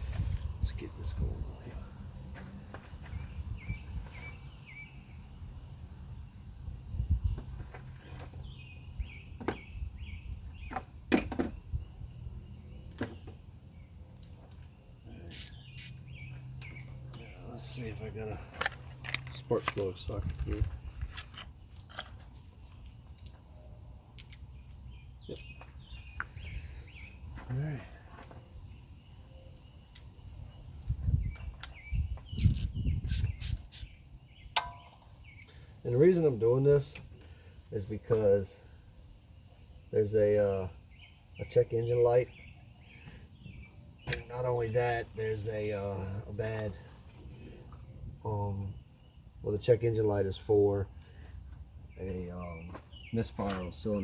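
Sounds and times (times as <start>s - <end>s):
faint chirping: 11.5s - 18.5s, 22.4s - 51.3s
hand tools clinking: 15.3s - 16.0s, 32.4s - 33.9s.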